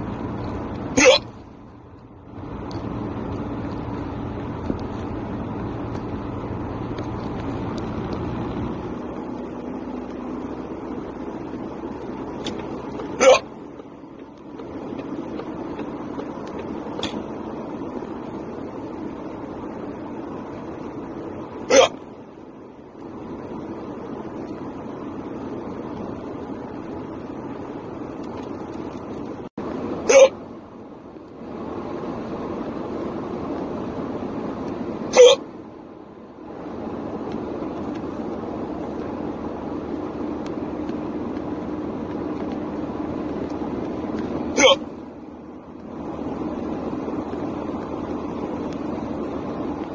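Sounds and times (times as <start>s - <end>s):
car road noise rumble: 0.0s - 49.9s
person hiccuping: 0.9s - 1.4s, 13.2s - 13.5s, 21.7s - 22.0s, 30.0s - 30.4s, 35.1s - 35.4s, 44.5s - 44.9s.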